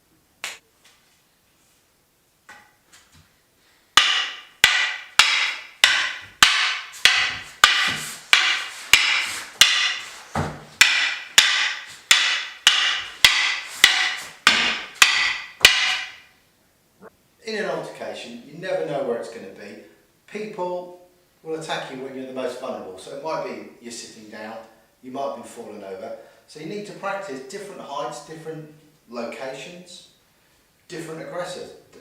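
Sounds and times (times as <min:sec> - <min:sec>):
canes clacking together: 0:04.0 - 0:16.3.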